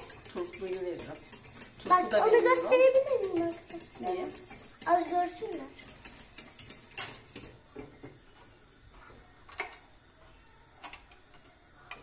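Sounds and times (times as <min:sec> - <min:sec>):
objects clicking and knocking: 0:03.0 - 0:08.2, 0:09.4 - 0:09.9.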